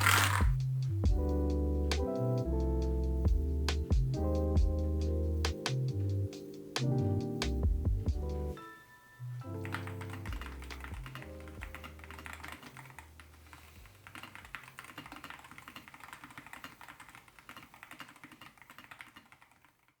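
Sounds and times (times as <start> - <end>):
background music: 0.0 - 14.1
fast typing key clacks: 9.6 - 20.0.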